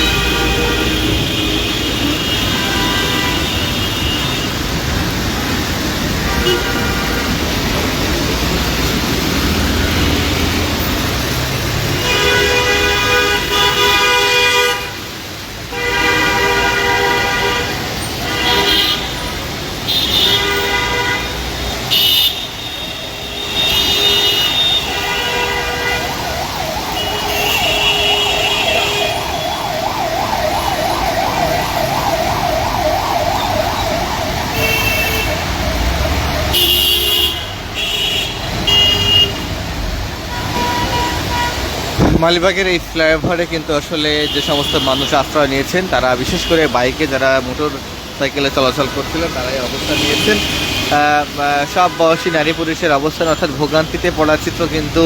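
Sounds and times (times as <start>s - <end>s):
vehicle horns: 0.0s - 4.8s, 5.5s - 7.6s, 11.9s - 15.1s, 15.7s - 31.7s, 34.0s - 39.6s, 40.2s - 42.2s, 44.0s - 45.5s, 48.6s - 54.3s
rain: 0.0s - 55.0s
traffic noise: 0.0s - 55.0s
siren wailing: 26.0s - 36.7s.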